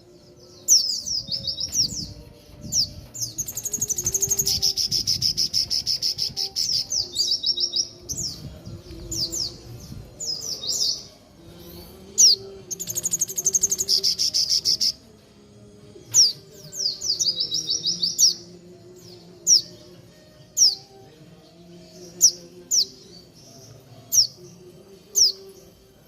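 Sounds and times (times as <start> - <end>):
bird chirping and trilling: 0.4 - 15.0.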